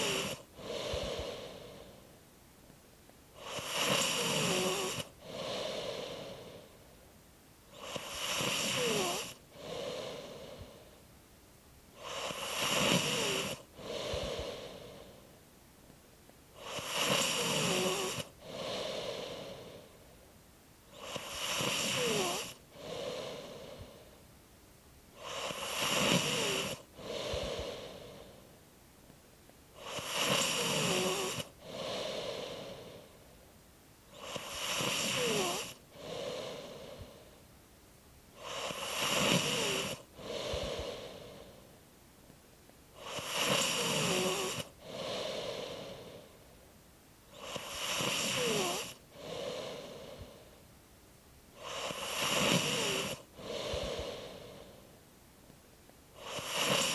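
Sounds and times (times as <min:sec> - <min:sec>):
person snoring: 0:00.0 - 0:02.0, 0:03.4 - 0:06.8, 0:07.7 - 0:11.0, 0:12.0 - 0:15.3, 0:16.6 - 0:20.0, 0:20.9 - 0:24.2, 0:25.2 - 0:28.4, 0:29.8 - 0:33.2, 0:34.1 - 0:37.4, 0:38.4 - 0:41.7, 0:43.0 - 0:46.4, 0:47.3 - 0:50.6, 0:51.6 - 0:54.9, 0:56.2 - 0:56.9
squeak in snore: 0:07.8 - 0:09.4, 0:12.0 - 0:13.6, 0:21.0 - 0:22.5, 0:29.8 - 0:31.4, 0:34.2 - 0:35.7, 0:43.0 - 0:44.6, 0:47.4 - 0:49.0, 0:56.2 - 0:56.9.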